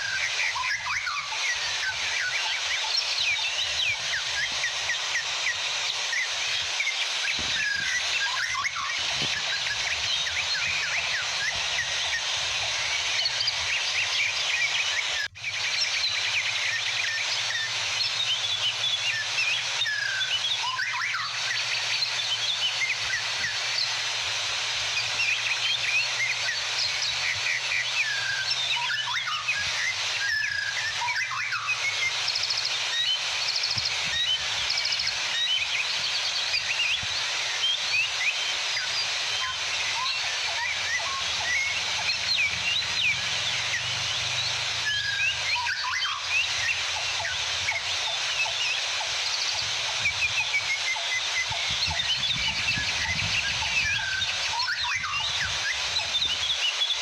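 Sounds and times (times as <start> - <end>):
small birds chirping: 0.0 - 57.0
waterfall rushing: 34.2 - 52.6.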